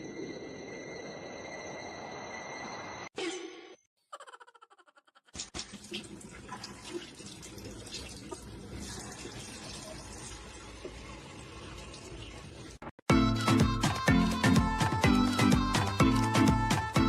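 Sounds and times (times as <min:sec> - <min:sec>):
tap water running: 0:05.5 - 0:12.9.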